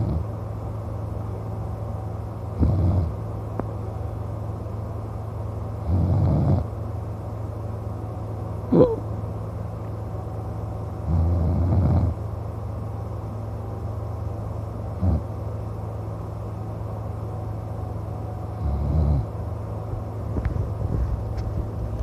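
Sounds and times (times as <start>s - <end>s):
steady low hum: 0.0s - 22.0s
man snoring: 2.6s - 3.1s, 5.9s - 6.6s, 11.1s - 12.2s, 18.6s - 19.3s.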